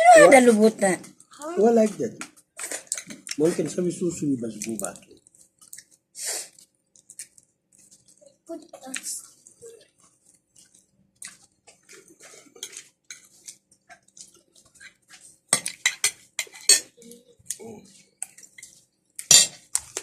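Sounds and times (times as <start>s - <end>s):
cutlery and dishes clinking: 2.6s - 3.7s, 11.8s - 14.0s, 14.7s - 17.0s, 18.3s - 20.0s.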